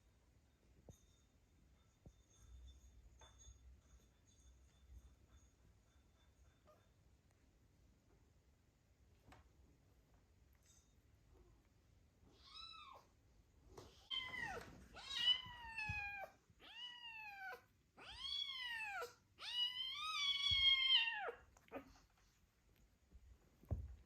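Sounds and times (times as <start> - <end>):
cat meowing: 14.0 - 22.0.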